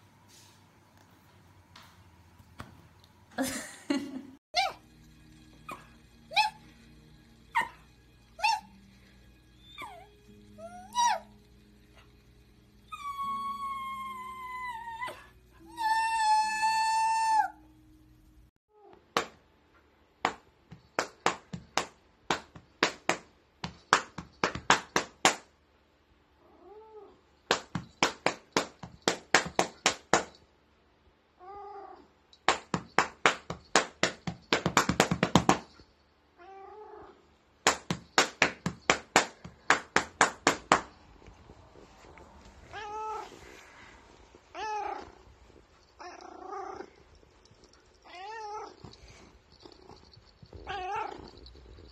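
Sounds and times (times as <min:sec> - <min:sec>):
cat meowing: 0:42.6 - 0:43.6, 0:44.5 - 0:45.3, 0:48.0 - 0:48.9, 0:50.0 - 0:51.5.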